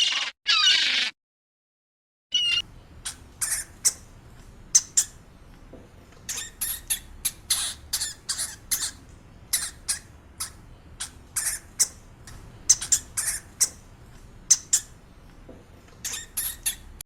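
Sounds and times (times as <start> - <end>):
small animal squeaking and chirping: 0.0 - 1.2, 2.3 - 4.1, 4.7 - 5.2, 6.2 - 13.9, 14.5 - 15.0, 16.0 - 17.0.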